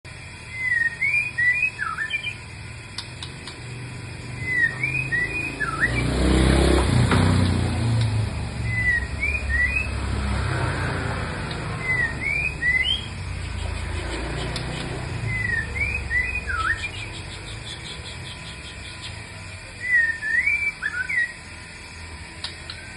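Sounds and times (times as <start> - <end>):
bird whistling: 0.5 - 2.5, 4.3 - 6.2, 8.6 - 10.0, 11.6 - 21.4
vehicle passing: 3.7 - 18.7.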